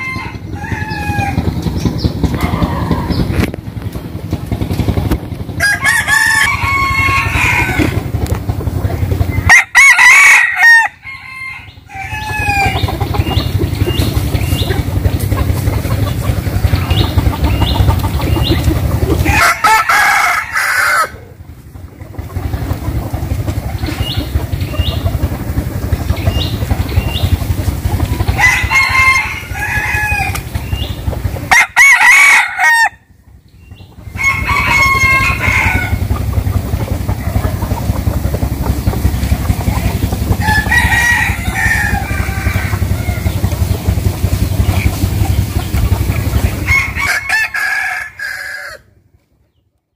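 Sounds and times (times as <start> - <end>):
low rumble: 0.0 - 9.5
roosters crowing: 0.0 - 49.1.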